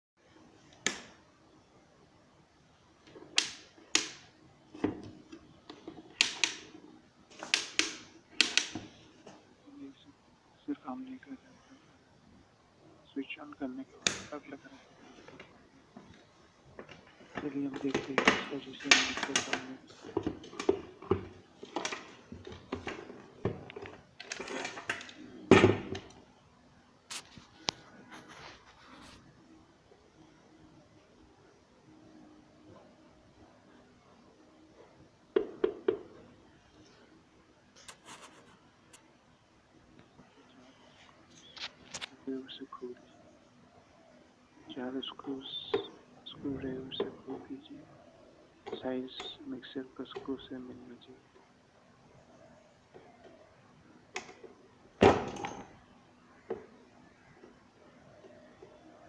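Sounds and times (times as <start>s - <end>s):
sharp clicks: 7.4s - 8.8s
hard objects clicking and knocking: 16.8s - 26.2s, 54.2s - 55.8s.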